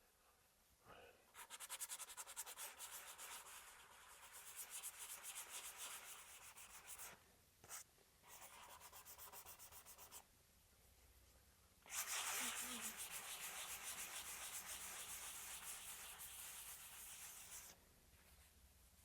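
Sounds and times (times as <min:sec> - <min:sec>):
sandpaper rubbing on wood: 0:01.4 - 0:07.1, 0:11.9 - 0:17.7.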